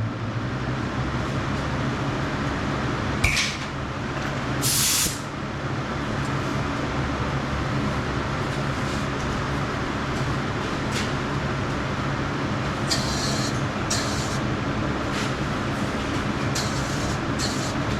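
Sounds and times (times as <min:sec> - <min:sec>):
exhaust fan humming: 0:00.0 - 0:17.9
compressed air blast: 0:04.6 - 0:05.3.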